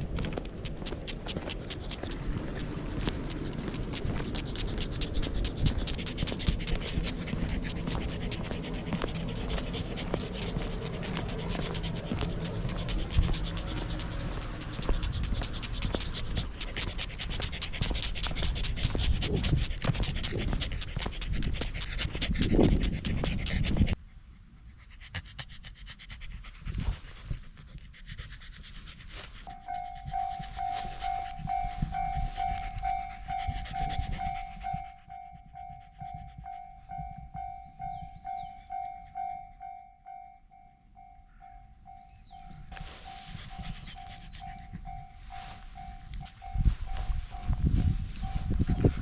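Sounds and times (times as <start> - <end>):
dog panting: 0.0 - 39.4, 42.3 - 49.0
railroad crossing alarm ringing: 29.5 - 49.0.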